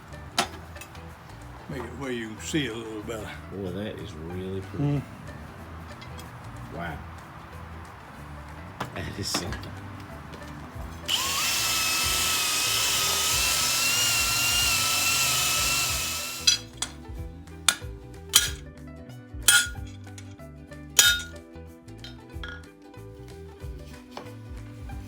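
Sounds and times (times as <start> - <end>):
metal clinks and knocks: 0.3 - 2.0, 5.6 - 7.8, 15.8 - 17.1, 17.7 - 18.6, 19.5 - 20.3, 21.0 - 21.4, 22.0 - 22.7
power tool whining on steel: 10.9 - 17.0.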